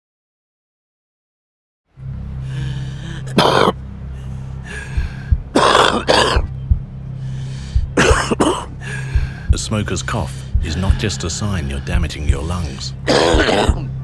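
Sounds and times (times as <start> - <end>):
low steady hum: 1.9 - 14.0
person coughing harshly: 3.3 - 3.8, 5.6 - 6.5, 8.0 - 8.7, 12.9 - 14.0
throat clearing: 3.3 - 3.8, 5.6 - 6.5, 8.0 - 8.7, 13.0 - 14.0.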